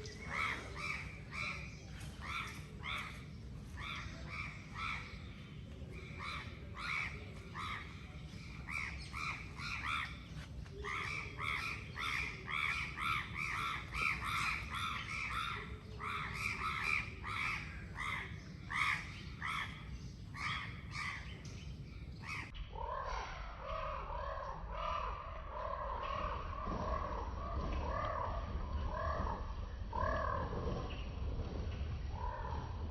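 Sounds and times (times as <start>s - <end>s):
wild animal calls: 22.8s - 31.0s.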